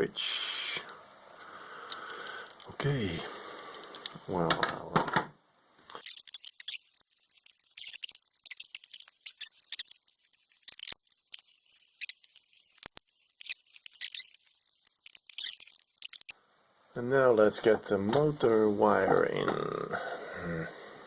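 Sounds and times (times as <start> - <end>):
crackling and scratching handling noise: 5.9 - 16.3
sharp clicks: 5.9 - 16.3.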